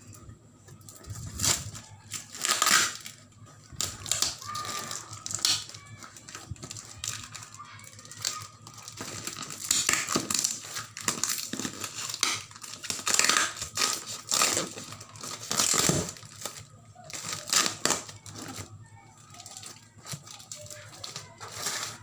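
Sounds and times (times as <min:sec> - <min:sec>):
packaging crinkling: 0:00.8 - 0:22.0.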